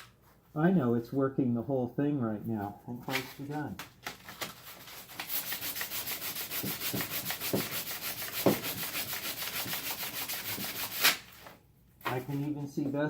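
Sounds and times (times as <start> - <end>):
sandpaper scratching back and forth: 4.7 - 11.3.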